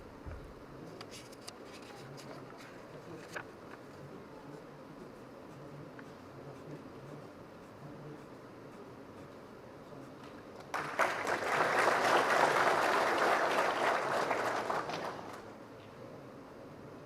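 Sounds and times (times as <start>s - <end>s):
audience applauding: 10.7s - 15.5s.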